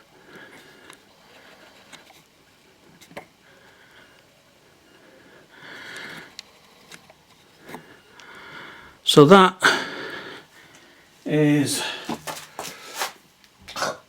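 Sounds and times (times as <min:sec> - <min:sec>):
person sniffing: 0:11.8 - 0:14.0.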